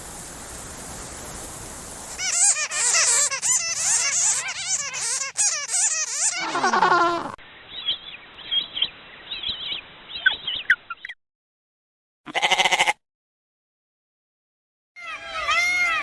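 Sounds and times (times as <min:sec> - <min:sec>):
hiss: 0:00.0 - 0:04.3
birds chirping: 0:02.0 - 0:11.2
rapid trembling animal call: 0:02.1 - 0:07.4
falling animal call: 0:02.2 - 0:07.4, 0:12.3 - 0:13.0, 0:15.0 - 0:16.0.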